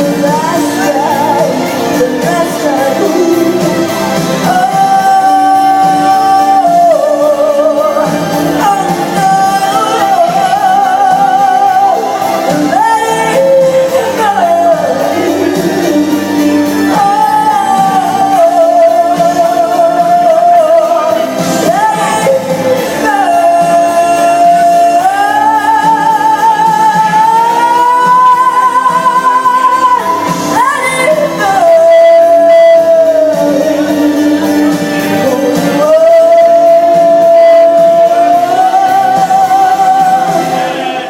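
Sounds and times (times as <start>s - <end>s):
backing music: 0.0s - 41.0s
woman singing with vibrato: 0.0s - 41.0s.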